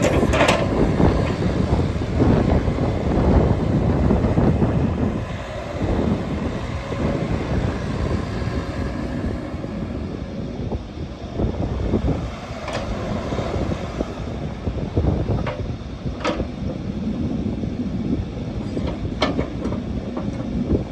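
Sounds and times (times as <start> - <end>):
metallic clanks: 0.0 - 1.4
excavator engine running: 0.0 - 20.9.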